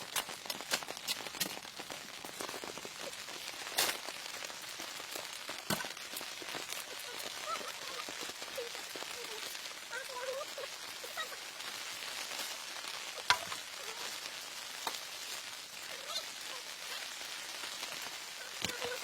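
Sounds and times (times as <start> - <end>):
precipitation pattering on a surface: 0.0 - 11.4, 12.0 - 19.0
faint voice-like sounds: 6.6 - 11.6, 13.1 - 14.4, 15.3 - 17.4, 18.2 - 19.0.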